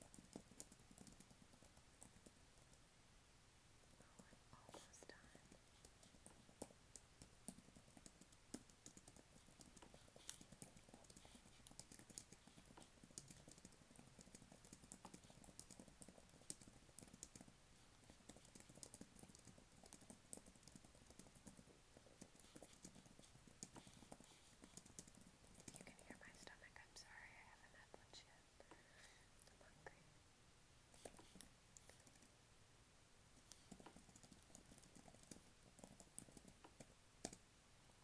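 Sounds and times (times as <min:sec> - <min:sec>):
computer keyboard typing: 0:00.0 - 0:02.8, 0:05.1 - 0:26.4, 0:30.9 - 0:32.3, 0:33.5 - 0:37.4.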